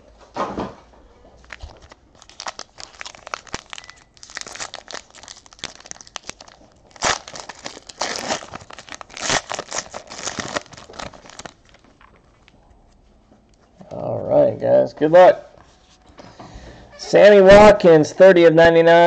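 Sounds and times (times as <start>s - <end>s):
plastic shrink wrap crinkling: 1.3s - 12.6s
plastic wrap ripping: 1.4s - 12.3s.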